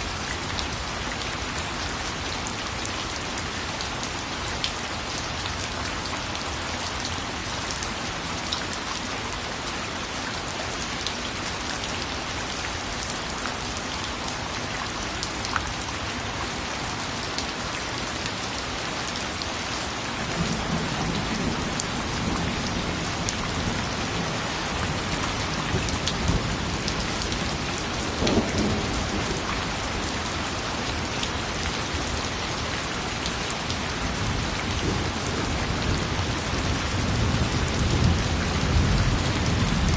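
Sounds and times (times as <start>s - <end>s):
steady rain falling: 0.0s - 39.9s
low thunder rumbling: 20.3s - 29.5s.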